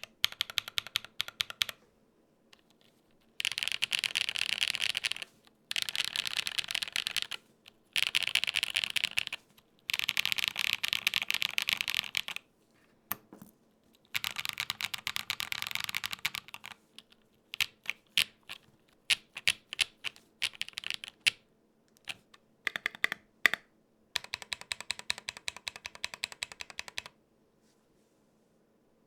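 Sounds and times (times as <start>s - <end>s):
mechanical keyboard typing: 0.0s - 1.8s, 3.4s - 12.4s, 14.1s - 21.4s, 22.0s - 23.6s, 24.2s - 27.2s.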